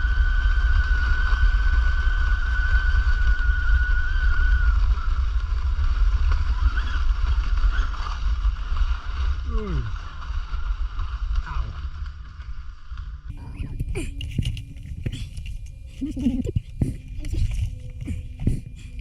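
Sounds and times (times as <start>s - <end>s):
heavy low rumble: 0.0s - 19.0s.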